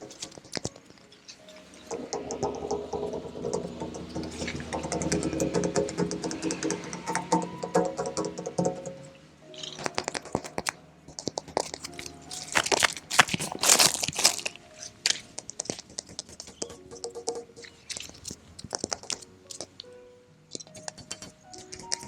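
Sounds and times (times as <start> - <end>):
faint background music: 0.0 - 22.0
fingers tapping on metal: 1.9 - 13.3, 15.1 - 19.7
fingers scratching: 9.6 - 19.7, 20.6 - 22.0.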